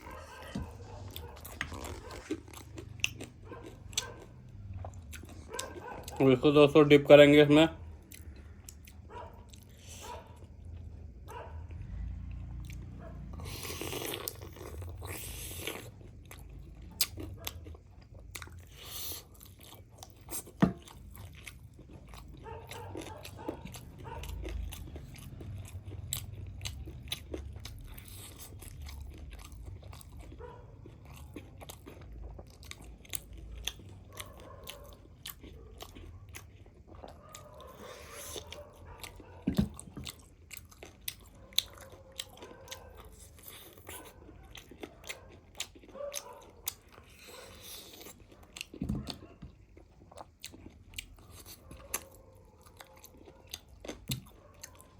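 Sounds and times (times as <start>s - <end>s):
person chewing crunchy food: 0.0s - 6.6s, 7.8s - 54.9s.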